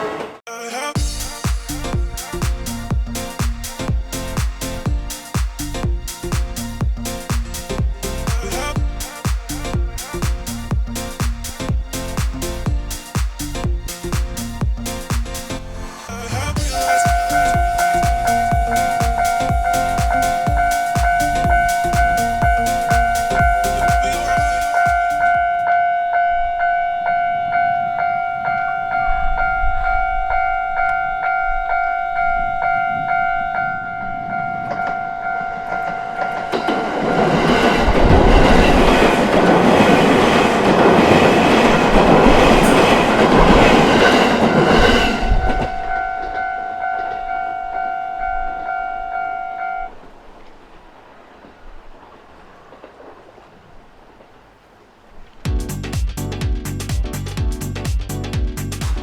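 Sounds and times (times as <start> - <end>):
train rumble and wheel clatter: 1.0 - 15.6, 16.3 - 25.8, 34.7 - 47.4
level-crossing alarm ding: 16.6 - 37.0, 45.6 - 49.9.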